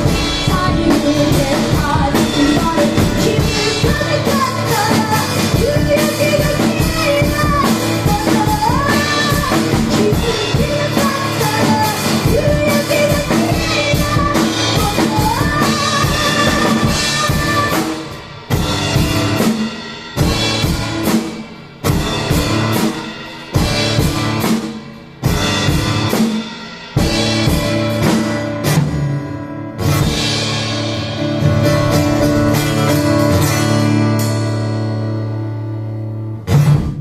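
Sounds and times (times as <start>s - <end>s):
person singing: 0.0s - 18.1s
rock band playing: 0.0s - 37.0s.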